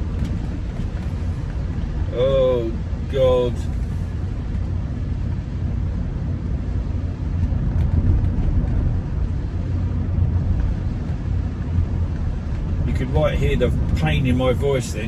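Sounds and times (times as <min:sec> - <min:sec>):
car engine and tyres rumbling: 0:00.0 - 0:15.0
road noise: 0:00.0 - 0:15.0.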